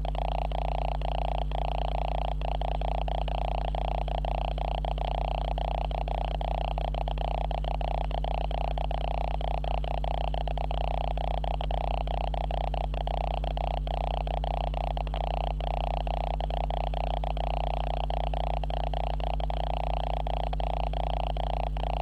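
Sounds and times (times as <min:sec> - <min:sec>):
camera electrical buzzing hum: 0:00.0 - 0:22.0.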